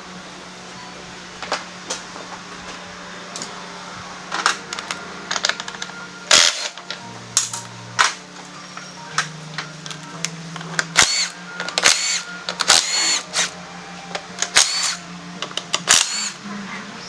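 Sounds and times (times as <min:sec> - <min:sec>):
steady low hum: 0:00.0 - 0:17.0
tools and parts clattering: 0:04.3 - 0:16.4.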